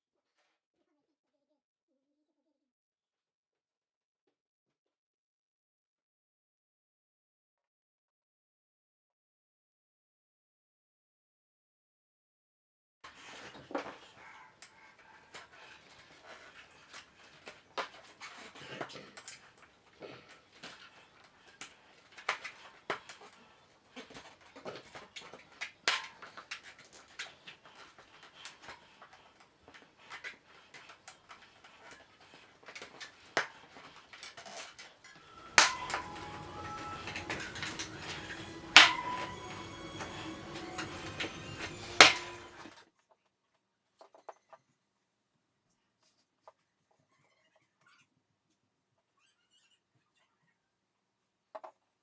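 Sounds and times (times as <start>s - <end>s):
hands fitting tyre onto rim: 15.3s - 42.7s.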